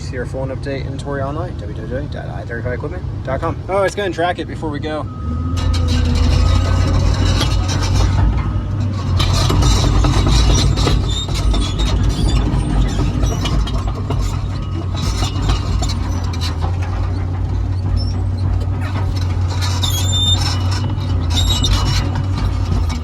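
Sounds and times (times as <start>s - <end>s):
diesel engine running: 0.0s - 23.0s
short high squeaks: 5.3s - 23.0s
steel tracks clanking: 5.4s - 23.0s.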